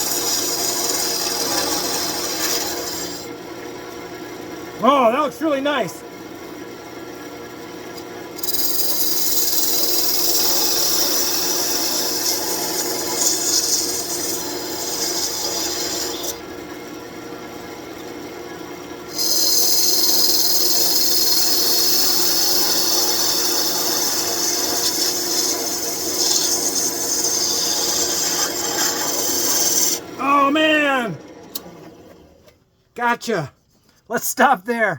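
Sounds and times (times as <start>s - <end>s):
lathe humming: 0.0s - 3.2s, 8.4s - 16.6s, 19.1s - 30.5s
lathe tool cutting wood: 0.0s - 3.3s, 8.4s - 16.5s, 19.1s - 31.6s.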